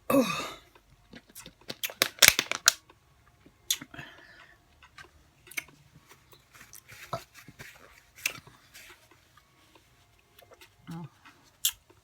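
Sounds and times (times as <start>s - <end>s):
mouth smacking clicks: 3.7s - 3.9s
person chewing: 4.8s - 9.0s, 10.4s - 12.0s.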